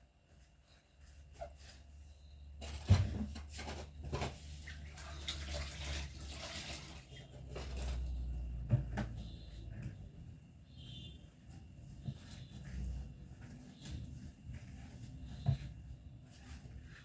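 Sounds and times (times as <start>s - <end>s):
running water: 4.6s - 8.0s.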